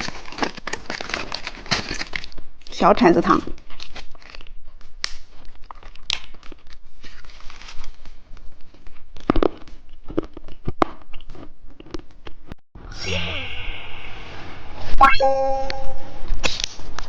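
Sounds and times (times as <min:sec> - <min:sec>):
candy wrapper crackling: 0:00.0 - 0:02.8.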